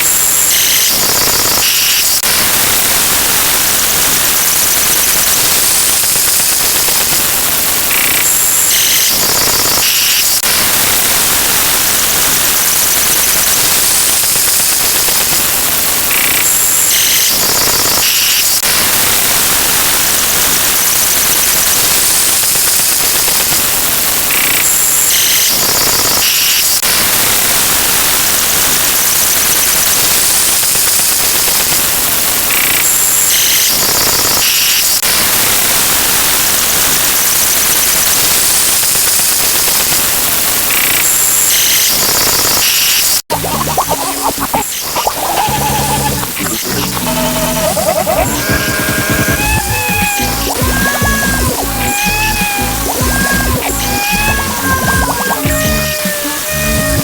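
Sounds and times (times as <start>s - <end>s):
layered sound effects cacophony: 0.0s - 57.0s
stepped high tones: 43.3s - 57.0s.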